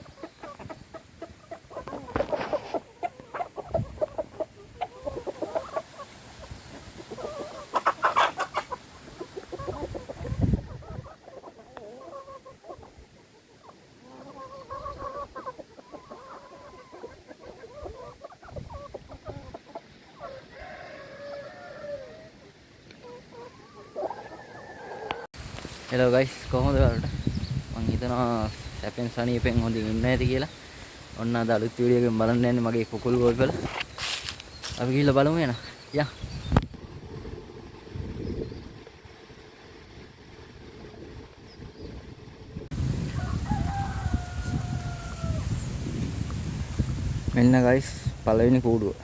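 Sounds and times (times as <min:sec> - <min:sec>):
chickens clucking: 0:00.0 - 0:25.3, 0:26.0 - 0:39.0.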